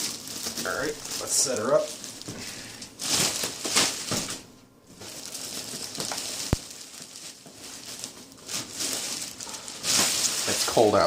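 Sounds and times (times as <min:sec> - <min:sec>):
packaging rustling and crinkling: 0:00.0 - 0:11.0.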